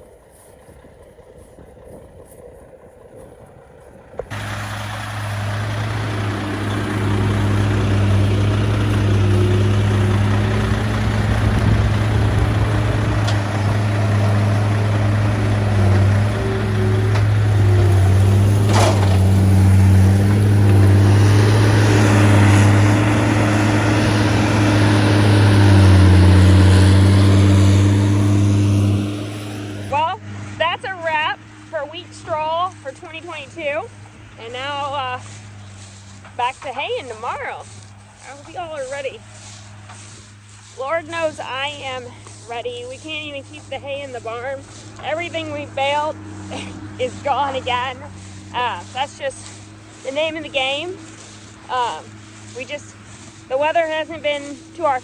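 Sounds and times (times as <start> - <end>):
wind: 0.0 - 55.0
heavy vehicle engine running: 4.2 - 55.0.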